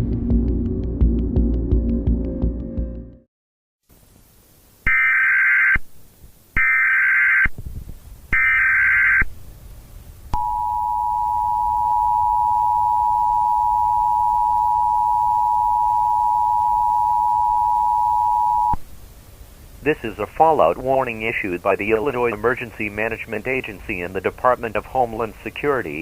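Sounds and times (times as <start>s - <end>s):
screeching data bursts: 8.3s - 9.3s
two-tone attention signal: 10.4s - 18.8s.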